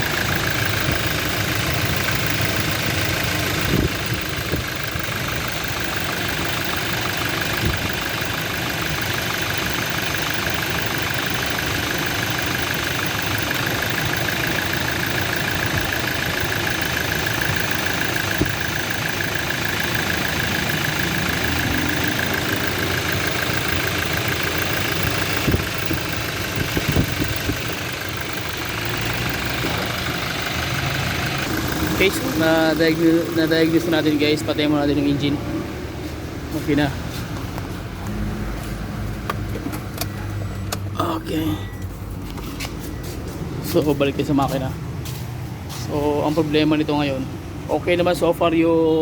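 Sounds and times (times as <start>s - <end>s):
engine knocks: 0.0s - 35.2s
diesel engine idling with clatter: 0.0s - 49.0s.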